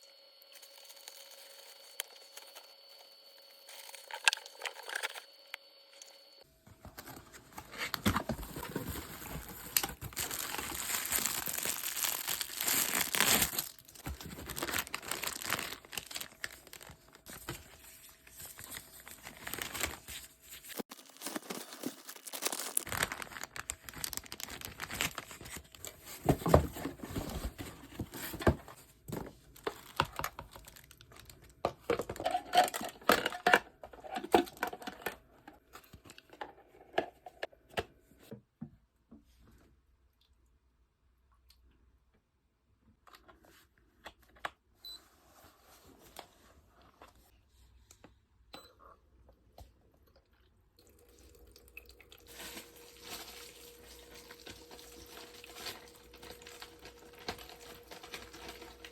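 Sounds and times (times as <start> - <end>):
packaging crinkling and tearing: 7.0 - 28.6, 29.5 - 33.6, 52.2 - 58.9.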